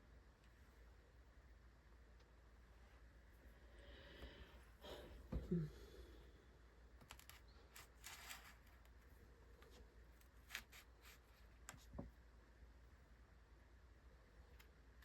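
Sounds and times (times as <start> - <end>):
rustling of soil and seedlings: 7.0 - 12.0.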